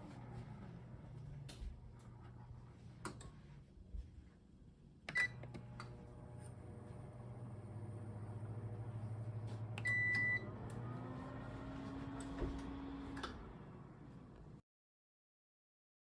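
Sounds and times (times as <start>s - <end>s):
microwave beep: 5.1s - 5.5s, 9.8s - 10.6s
microwave oven humming: 5.1s - 14.6s.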